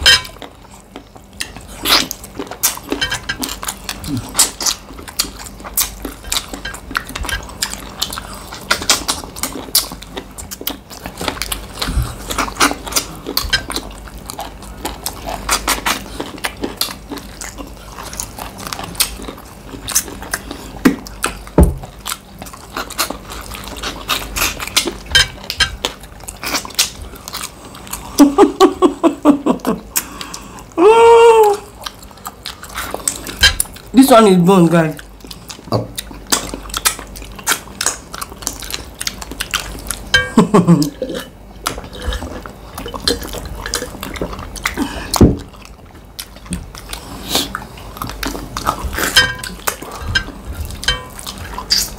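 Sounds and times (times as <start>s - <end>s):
people chewing and smacking lips: 0.0s - 51.9s
person humming: 30.8s - 31.7s.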